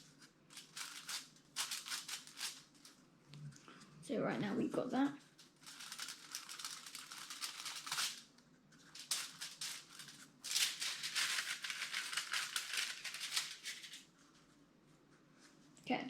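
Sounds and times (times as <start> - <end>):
brush scrubbing paint on paper: 0.0 - 2.8.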